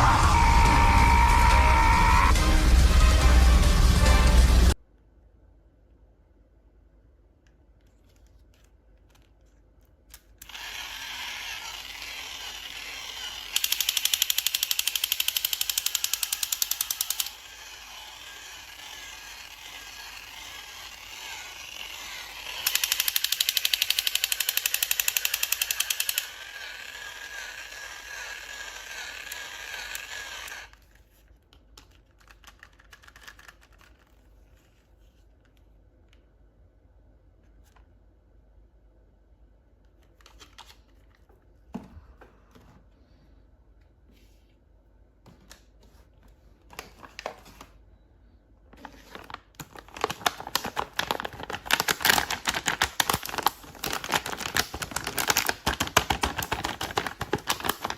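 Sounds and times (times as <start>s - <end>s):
toy motor buzzing: 10.4s - 30.8s.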